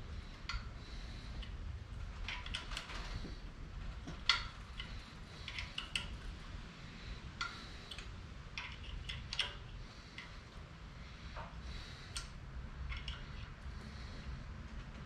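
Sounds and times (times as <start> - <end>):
metal tools clicking and clinking: 4.1 - 6.2.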